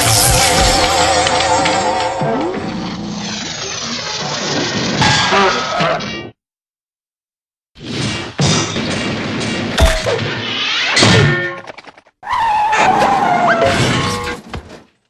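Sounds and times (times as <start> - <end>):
cartoon thuds and crashes: 0.0 - 2.7
whistle-like gliding tones: 0.0 - 3.3.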